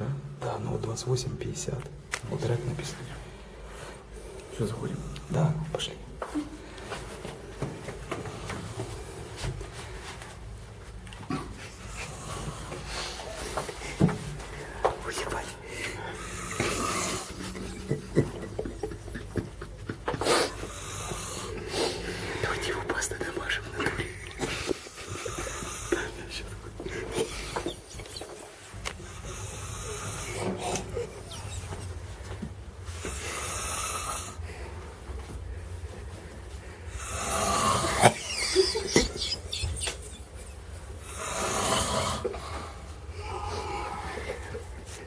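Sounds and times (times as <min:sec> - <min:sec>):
person snoring: 0:15.9 - 0:19.1, 0:36.9 - 0:39.2, 0:41.0 - 0:44.4.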